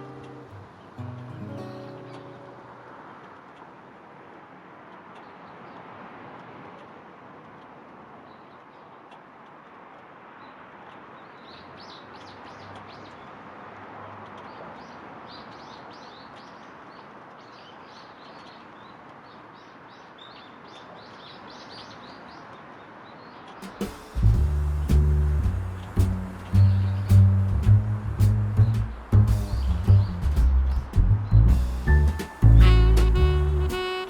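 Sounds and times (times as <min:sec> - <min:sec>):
background hiss: 0:00.0 - 0:04.4, 0:23.6 - 0:34.0
birds chirping high: 0:11.2 - 0:13.4, 0:14.4 - 0:24.9, 0:28.6 - 0:34.0.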